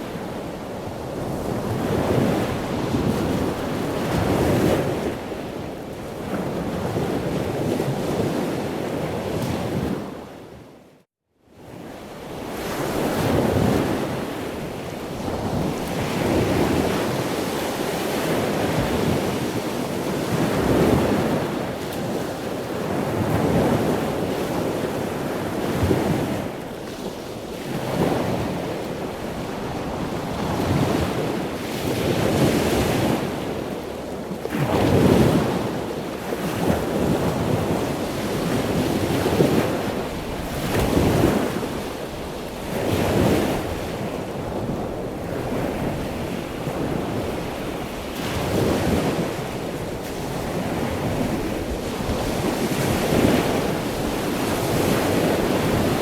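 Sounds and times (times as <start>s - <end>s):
ocean waves breaking: 15.1s - 56.0s.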